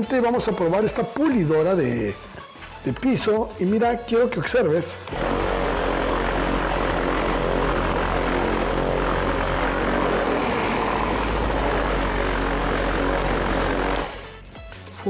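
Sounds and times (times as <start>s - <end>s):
floor polisher motor whirring: 5.0s - 14.5s.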